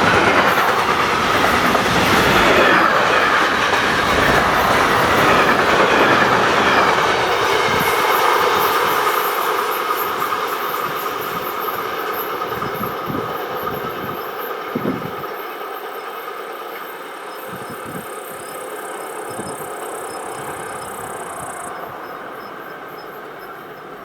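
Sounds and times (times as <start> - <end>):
low thuds of train: 0.0 - 15.4
train rolling past: 0.0 - 24.0.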